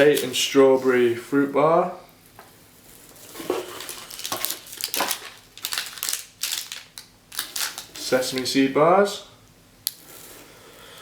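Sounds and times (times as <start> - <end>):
food packets crinkling: 3.2 - 8.6.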